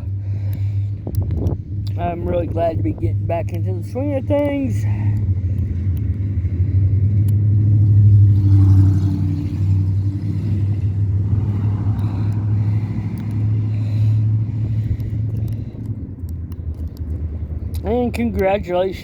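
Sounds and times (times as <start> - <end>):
faint ticks: 0.0 - 2.0, 4.3 - 6.4, 7.2 - 8.0, 11.5 - 18.6
vehicle engine rumbling: 0.0 - 19.0.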